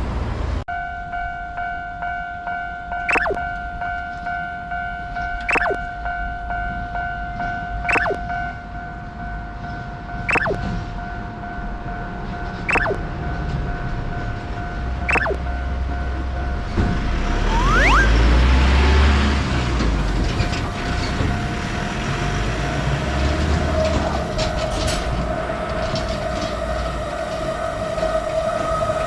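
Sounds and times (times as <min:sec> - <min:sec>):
railroad crossing bell ringing: 0:00.7 - 0:16.7
falling pitch sweep: 0:03.1 - 0:03.4, 0:05.5 - 0:05.8, 0:07.9 - 0:08.2, 0:10.3 - 0:10.6, 0:12.7 - 0:13.0, 0:15.1 - 0:15.4, 0:17.3 - 0:18.4
rising glide: 0:03.1 - 0:03.4, 0:05.5 - 0:05.8, 0:07.9 - 0:08.2, 0:10.3 - 0:10.6, 0:12.7 - 0:13.0, 0:15.1 - 0:15.4, 0:17.4 - 0:18.4
train rumbling past: 0:18.2 - 0:29.0.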